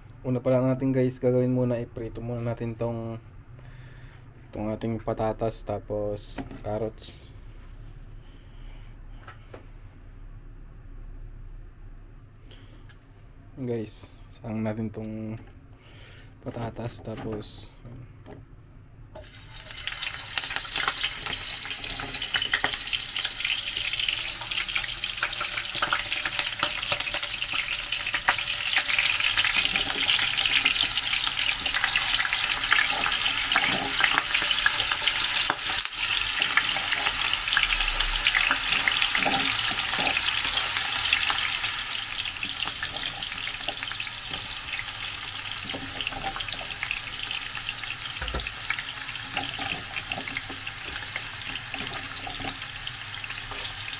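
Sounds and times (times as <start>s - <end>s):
potatoes sizzling in oil: 19.2s - 53.9s.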